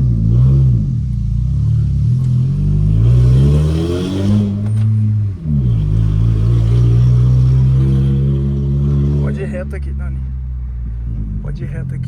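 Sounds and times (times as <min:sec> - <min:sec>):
car engine revving through gears: 0:00.0 - 0:10.0.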